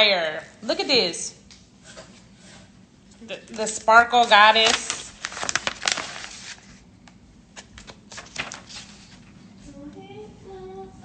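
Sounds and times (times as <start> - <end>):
gift packaging crinkling: 4.2 - 6.8, 7.8 - 9.1.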